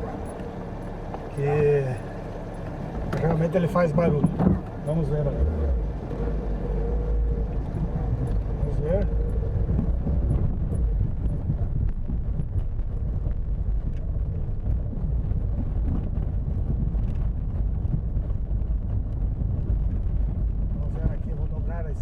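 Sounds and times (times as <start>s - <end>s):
tyre rumble on cobblestones: 7.5s - 22.0s.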